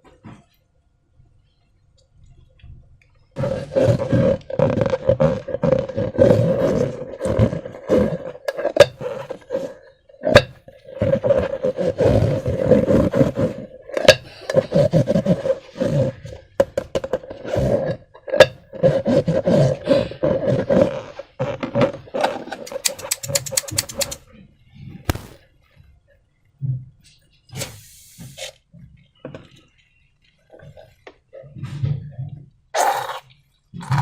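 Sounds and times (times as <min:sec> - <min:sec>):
balloon neck buzzing and squelching: 0:22.6 - 0:24.2, 0:25.1 - 0:25.4.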